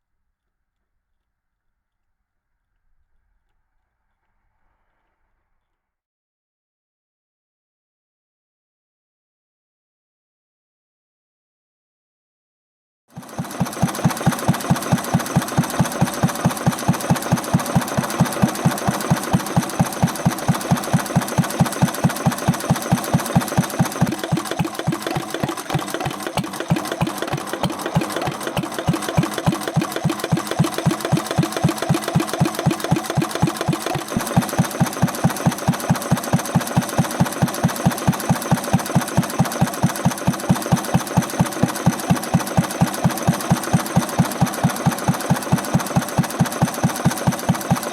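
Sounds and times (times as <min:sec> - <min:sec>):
single-cylinder engine running: 0:13.1 - 0:47.9.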